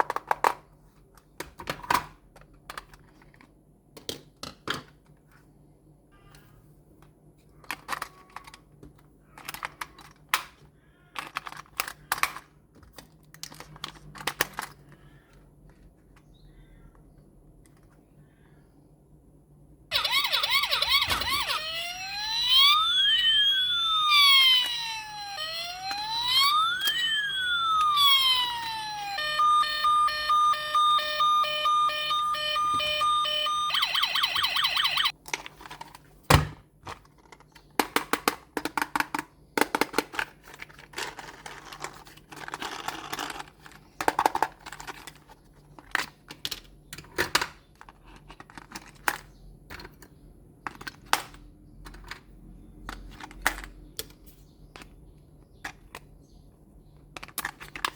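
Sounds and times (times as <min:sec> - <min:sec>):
plastic clicks of toy handling: 0:00.0 - 0:05.2, 0:07.0 - 0:16.3, 0:36.9 - 0:55.0, 0:55.6 - 0:56.2, 0:57.0 - 0:57.9
fast siren warble: 0:19.9 - 0:35.1
pulsed siren beeps: 0:19.9 - 0:35.1
toy electronic siren wail: 0:19.9 - 0:35.1
rustling of toy handled: 0:35.2 - 0:36.2, 0:38.9 - 0:51.2.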